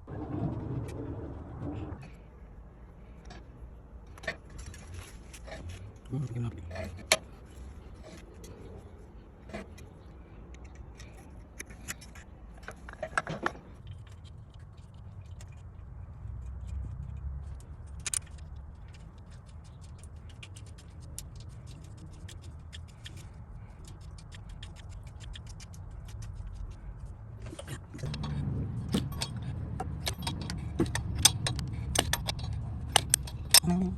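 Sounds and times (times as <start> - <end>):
low steady hum: 0.0 - 33.9
hand tools clinking on metal: 28.0 - 33.8.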